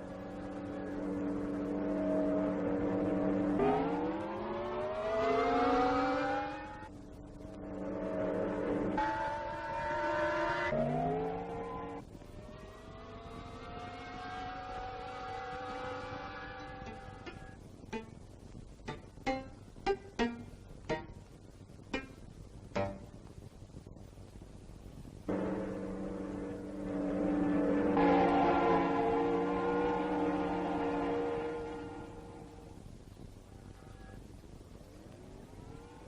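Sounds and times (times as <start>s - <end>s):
engine-like drone rising in pitch: 0.0s - 17.6s, 25.3s - 32.8s, 35.1s - 36.0s.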